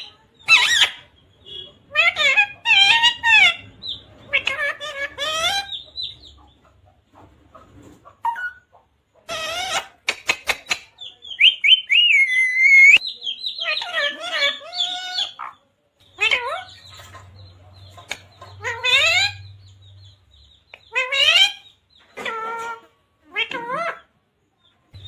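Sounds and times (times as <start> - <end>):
parrot chattering and whistling: 0.0 - 6.2, 9.3 - 15.6.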